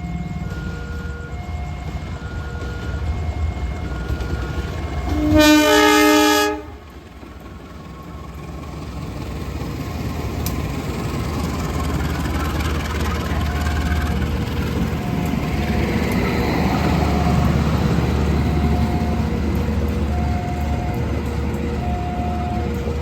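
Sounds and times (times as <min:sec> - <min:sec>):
train rumble: 0:00.0 - 0:23.0
train horn blast: 0:05.1 - 0:06.9.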